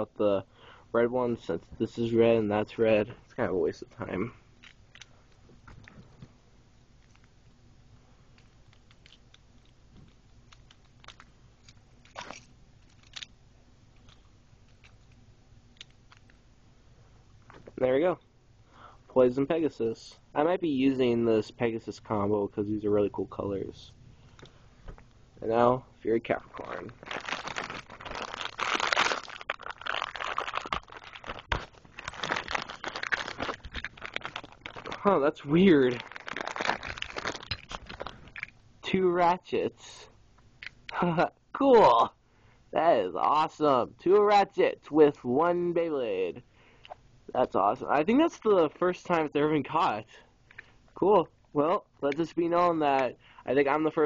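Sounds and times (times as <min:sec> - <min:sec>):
low steady hum: 0:00.0 - 0:54.0
plastic packaging crinkling: 0:08.3 - 0:13.4, 0:26.2 - 0:38.6
small plastic parts clicking: 0:08.4 - 0:11.8, 0:12.8 - 0:13.4.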